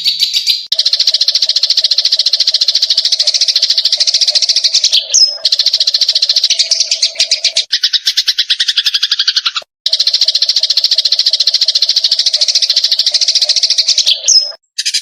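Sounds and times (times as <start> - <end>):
songbird trilling: 0.0 - 15.0
high bird whistle: 1.9 - 9.5, 12.0 - 15.0.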